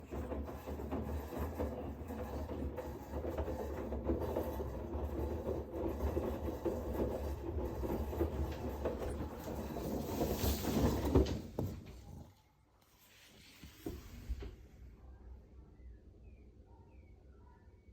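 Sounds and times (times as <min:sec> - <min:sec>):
washing machine rattling: 0:00.0 - 0:12.1
washing machine hum: 0:00.0 - 0:12.5.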